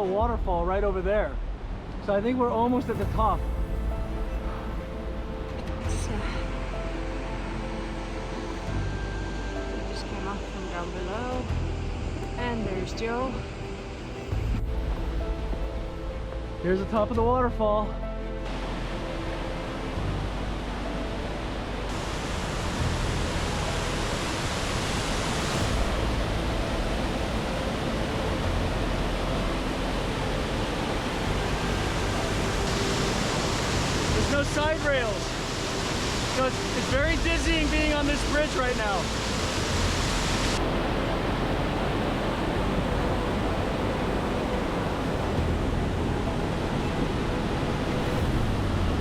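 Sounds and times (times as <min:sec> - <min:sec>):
low rumble: 0:00.2 - 0:17.4, 0:18.0 - 0:49.0
waterfall rushing water: 0:18.4 - 0:49.0.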